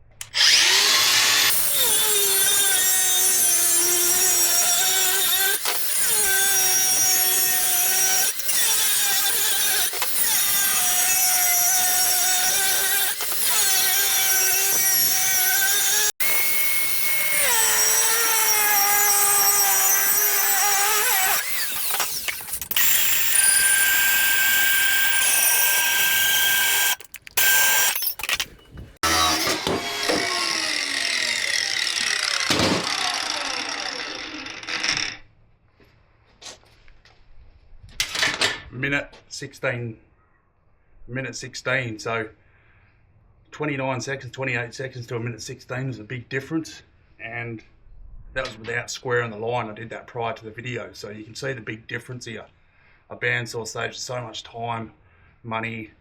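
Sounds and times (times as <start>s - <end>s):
angle grinder cutting steel: 0.2s - 35.2s.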